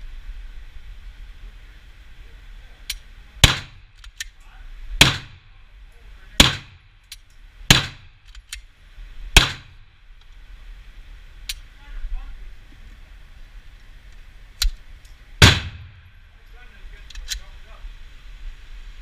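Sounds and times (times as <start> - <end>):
pistol shots with echo: 3.4 - 3.8, 5.0 - 5.4, 6.4 - 6.8, 7.7 - 8.1, 9.4 - 9.8, 15.4 - 16.0.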